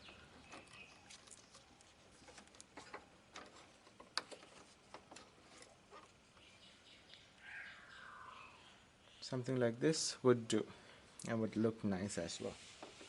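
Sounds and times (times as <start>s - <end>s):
clicks and knocks of handling: 0.0s - 6.1s.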